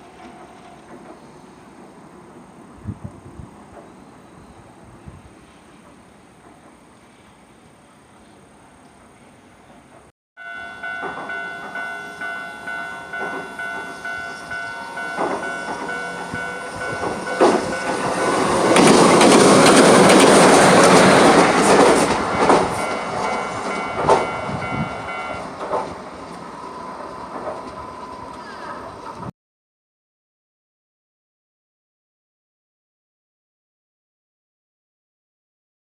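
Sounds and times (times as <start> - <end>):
level crossing warning bell: 10.4 - 18.6, 22.2 - 25.6
train wheels clattering over rail joints: 14.9 - 24.6, 25.5 - 26.4.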